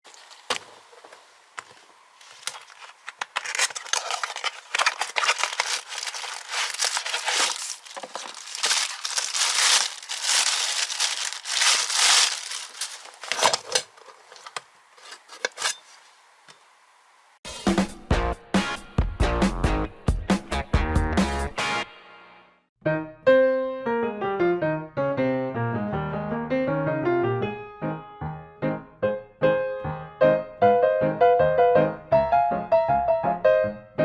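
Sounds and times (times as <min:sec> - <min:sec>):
plastic wrapping crinkling: 0:00.1 - 0:16.2.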